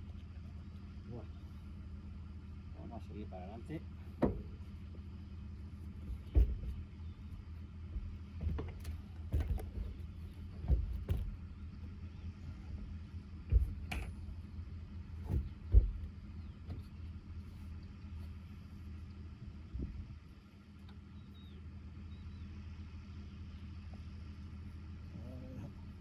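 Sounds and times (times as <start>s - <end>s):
steady low hum: 0.0s - 26.0s
knocks and clatters: 4.1s - 5.1s, 5.8s - 12.0s, 12.6s - 17.1s.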